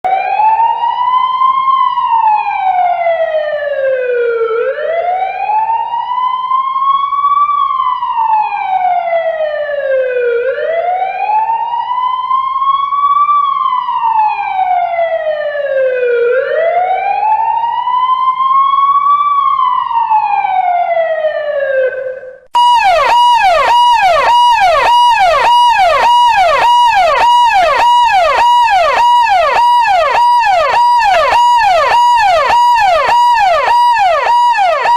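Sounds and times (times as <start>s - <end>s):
siren slow wail: 0.1s - 34.9s
siren fast yelp: 19.2s - 34.9s.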